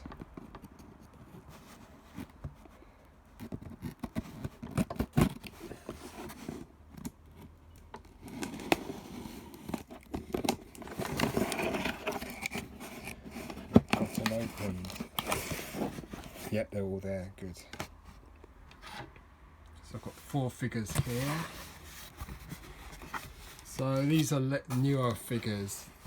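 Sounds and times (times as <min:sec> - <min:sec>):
cardboard box tearing and crinkling: 0:08.1 - 0:16.6.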